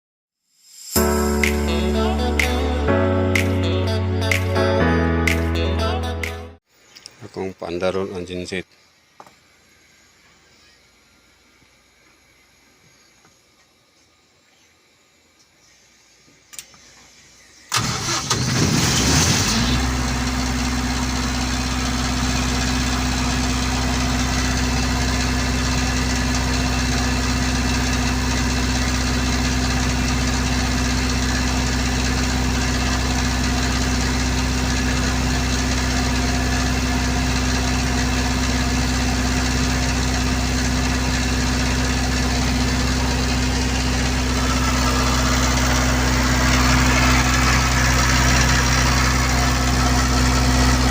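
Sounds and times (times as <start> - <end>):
generator engine cranking: 17.7 - 50.9
generator engine running: 17.7 - 50.9.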